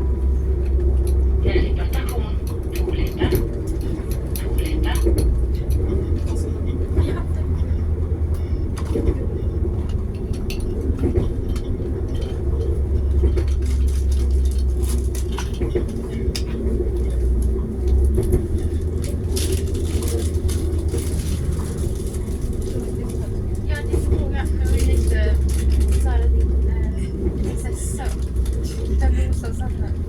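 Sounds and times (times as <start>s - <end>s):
train rumble inside carriage: 0.0s - 30.0s.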